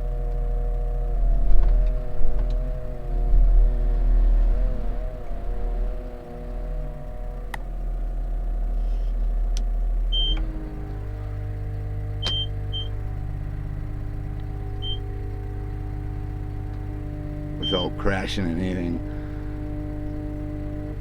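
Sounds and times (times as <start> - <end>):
wheel loader diesel engine: 0.0 - 21.0
short high electronic beeps: 17.6 - 18.0.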